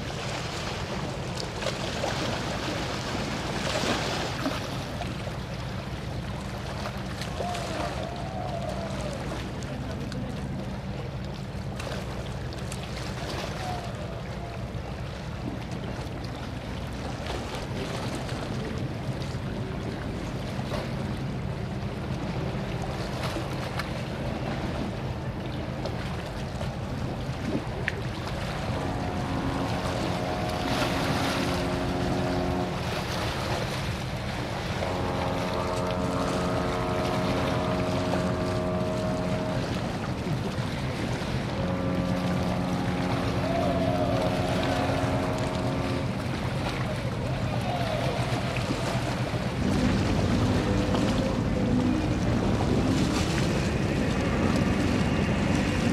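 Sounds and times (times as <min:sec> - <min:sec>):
boat engine humming: 0:00.0 - 0:55.9
ship's horn blasts: 0:00.0 - 0:55.9
water noise: 0:00.0 - 0:55.9
wind: 0:00.0 - 0:55.9
wind on microphone: 0:36.1 - 0:55.9.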